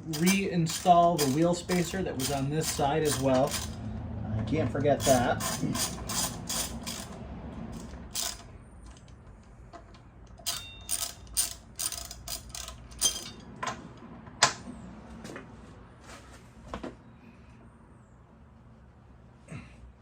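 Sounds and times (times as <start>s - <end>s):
hand ratchet clicking: 0.0s - 3.8s, 5.0s - 9.2s, 10.3s - 13.4s
sharp metal clicks: 0.0s - 3.8s, 5.0s - 13.5s.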